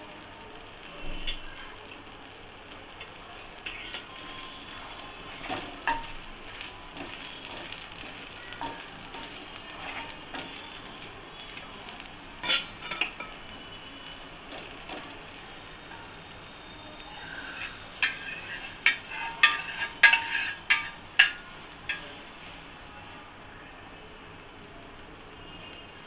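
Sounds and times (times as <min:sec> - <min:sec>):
batter sizzling on a griddle: 0:00.0 - 0:26.0
metal utensil scraping a pan: 0:03.6 - 0:13.6, 0:14.5 - 0:15.2, 0:17.1 - 0:22.3.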